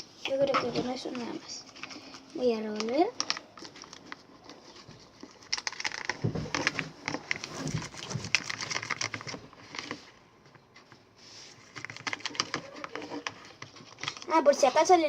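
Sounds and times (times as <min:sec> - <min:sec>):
utensil stirring in a container: 0:01.0 - 0:10.0.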